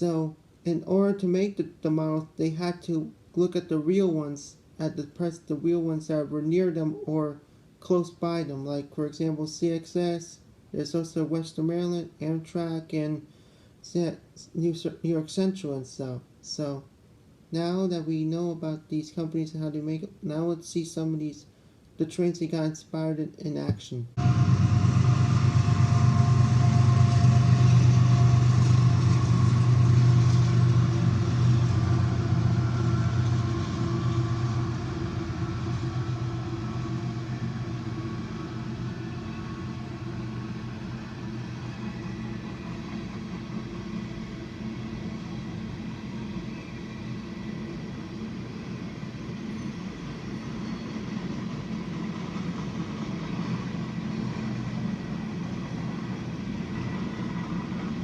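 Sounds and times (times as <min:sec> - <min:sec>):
locomotive engine drone: 0:24.2 - 0:58.0
train rumble: 0:24.2 - 0:58.0.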